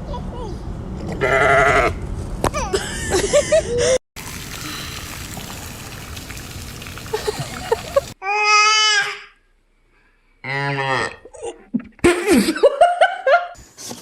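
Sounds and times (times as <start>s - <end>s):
water splashing and trickling: 4.2s - 8.2s.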